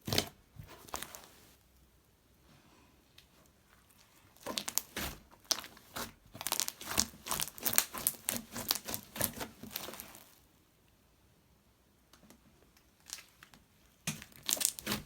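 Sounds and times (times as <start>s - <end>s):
slime clicking and popping: 4.4s - 5.7s, 6.4s - 10.0s, 14.1s - 15.0s.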